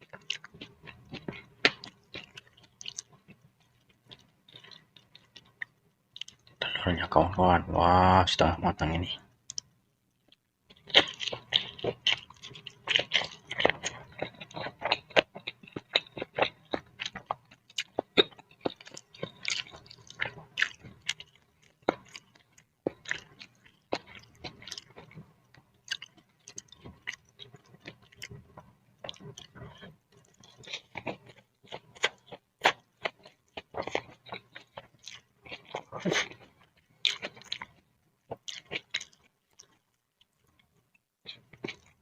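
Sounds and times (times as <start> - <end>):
chewing noodles: 0.0 - 6.8, 9.5 - 42.0
lip and tongue clicks: 10.3 - 25.2.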